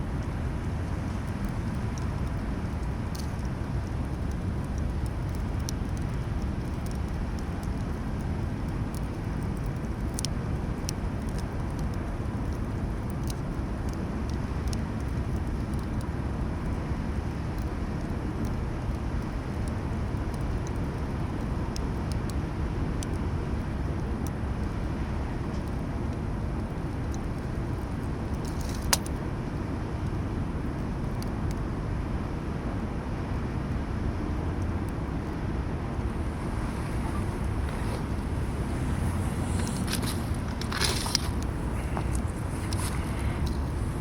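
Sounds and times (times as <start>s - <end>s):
steady low rumble: 0.0s - 21.8s, 31.1s - 44.0s
campfire crackling: 0.0s - 44.0s.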